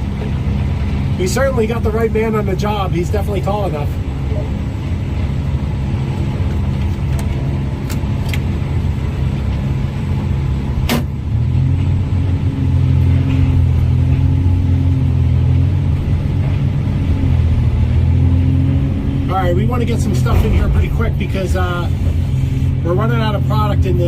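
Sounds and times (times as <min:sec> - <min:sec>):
heavy diesel machinery droning: 0:00.0 - 0:24.0
sharp metallic clank: 0:10.8 - 0:11.2.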